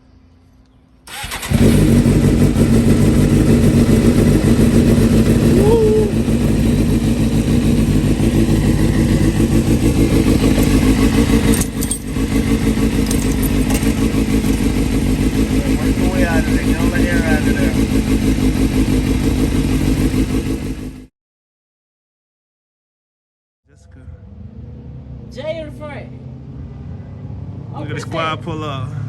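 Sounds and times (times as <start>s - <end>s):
motorcycle engine running: 1.1s - 21.1s.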